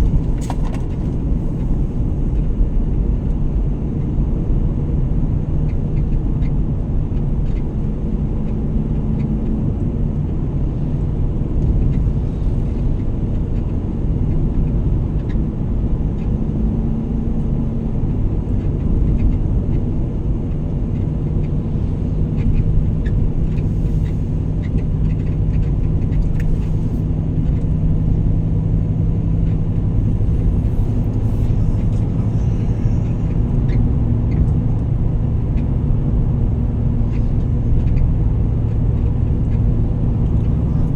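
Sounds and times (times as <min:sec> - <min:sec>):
car engine and road rumble: 0:00.0 - 0:40.9.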